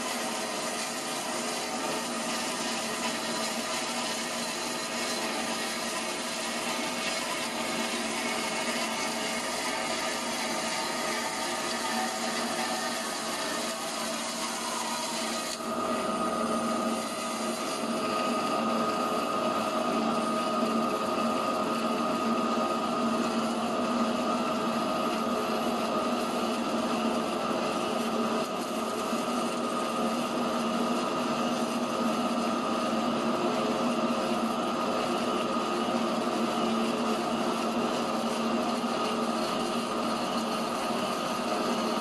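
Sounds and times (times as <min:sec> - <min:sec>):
wire rasping through foam: 0:00.2 - 0:15.7
machine hum: 0:00.4 - 0:23.8.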